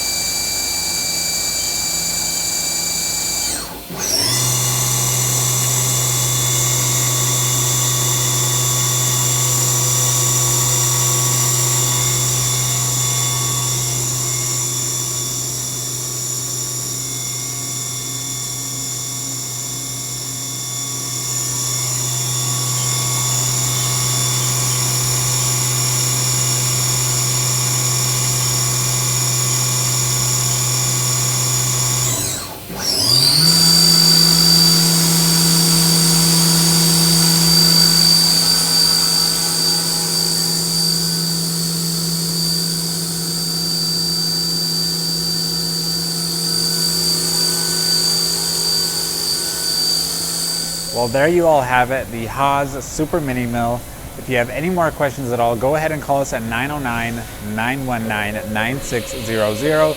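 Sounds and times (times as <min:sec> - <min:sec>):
mill spindle whining: 0:00.0 - 0:59.9.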